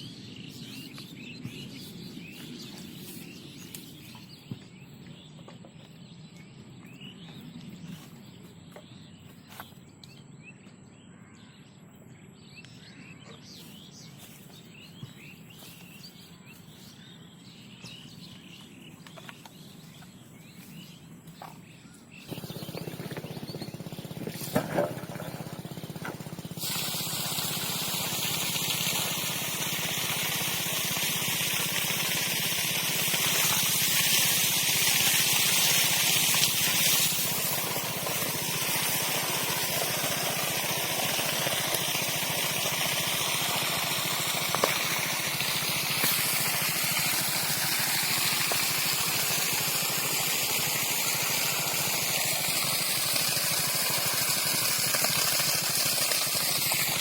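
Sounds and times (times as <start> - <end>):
water spraying and gushing: 22.3 - 57.0.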